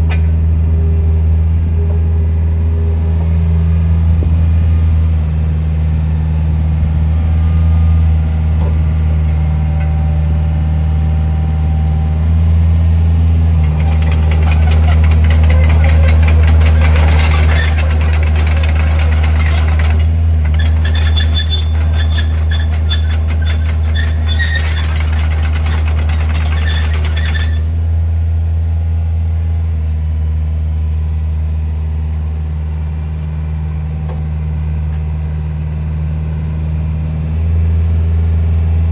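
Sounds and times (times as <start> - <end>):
diesel engine running: 0.0 - 38.9
rapid clatter with whine: 13.6 - 27.7.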